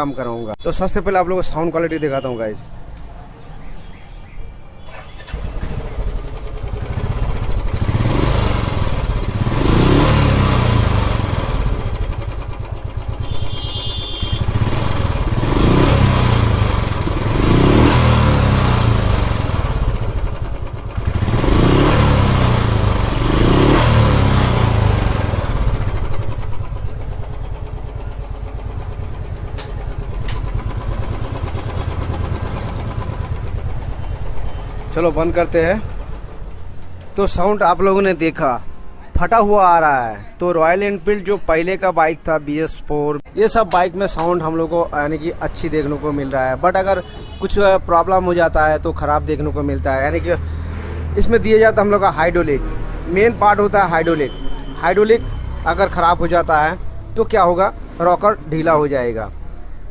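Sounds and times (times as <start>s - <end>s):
motorcycle engine starting: 4.8s - 36.9s
motorcycle engine idling and revving: 4.9s - 38.5s, 43.9s - 59.9s.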